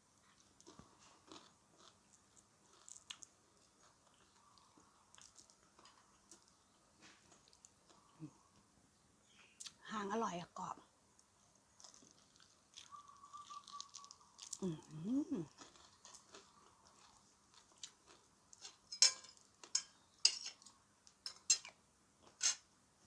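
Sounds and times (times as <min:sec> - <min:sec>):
chewing crispy food: 0:00.0 - 0:08.5, 0:11.1 - 0:22.6
person murmuring: 0:14.6 - 0:15.5.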